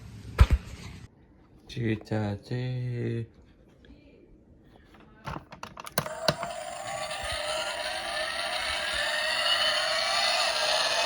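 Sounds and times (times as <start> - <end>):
toy truck motor whirring: 5.8 - 11.0.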